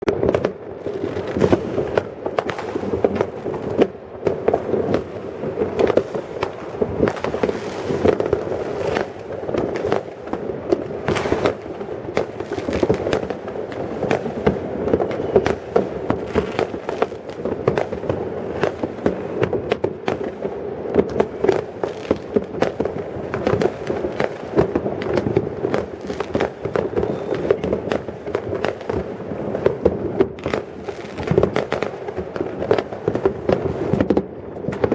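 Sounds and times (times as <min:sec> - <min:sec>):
fireworks and firecrackers banging: 0:00.0 - 0:34.9.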